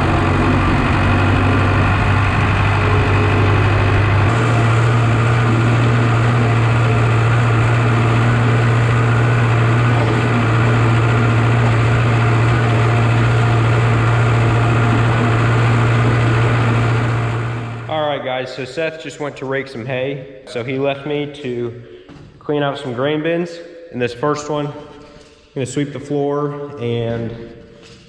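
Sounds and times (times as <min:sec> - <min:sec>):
engine running steadily: 0:00.0 - 0:17.9.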